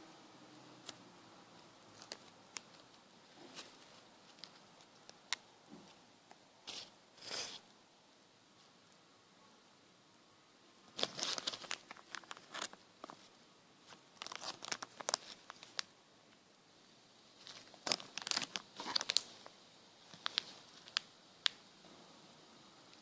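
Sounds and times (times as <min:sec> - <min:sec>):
squishy toys crinkling and clicking: 0:11.0 - 0:13.2, 0:14.2 - 0:15.9, 0:17.4 - 0:19.3, 0:20.1 - 0:21.1.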